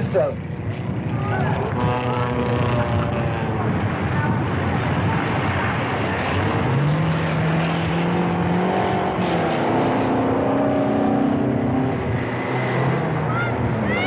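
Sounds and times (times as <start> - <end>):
racing car engines running hard: 0.0 - 14.0.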